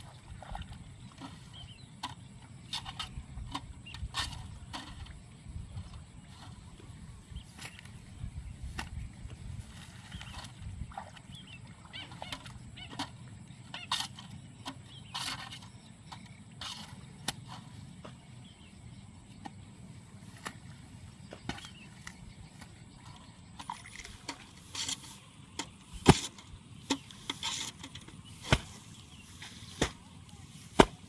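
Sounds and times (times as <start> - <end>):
blade scraping and chopping: 24.0 - 31.0.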